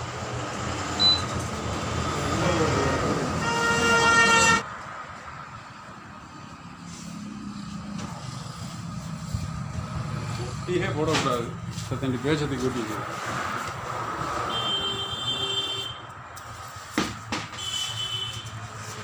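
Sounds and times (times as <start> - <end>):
road traffic: 0.0 - 19.0
vehicle horn: 2.9 - 4.6, 14.5 - 16.1, 17.6 - 18.8.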